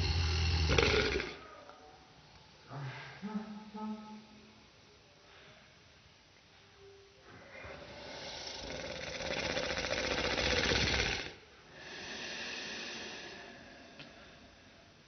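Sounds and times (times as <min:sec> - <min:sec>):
man snoring loudly: 0:00.0 - 0:01.4, 0:07.7 - 0:13.5
soft breath out: 0:11.7 - 0:15.0.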